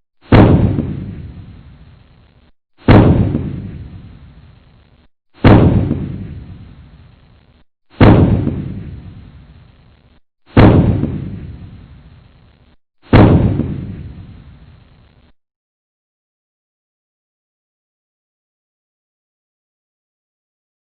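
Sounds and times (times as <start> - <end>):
explosion booms: 0.2 - 2.0, 2.8 - 4.5, 5.4 - 7.2, 7.9 - 9.7, 10.5 - 12.3, 13.0 - 14.8.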